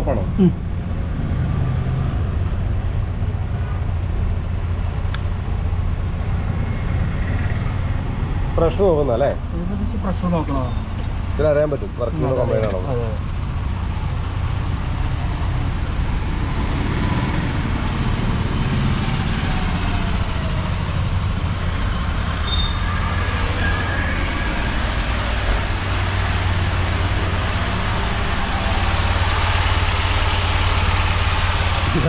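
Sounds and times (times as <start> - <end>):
small car engine running: 10.4 - 32.0.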